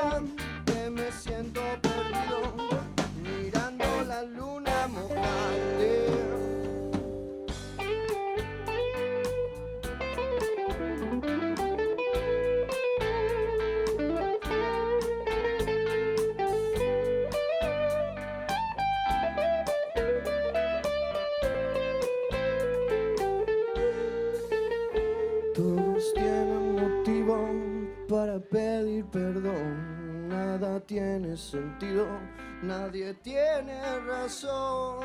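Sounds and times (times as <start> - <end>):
steady drum beat: 0.0 - 25.5
bass: 0.0 - 35.0
electric guitar lead melody: 0.0 - 35.0.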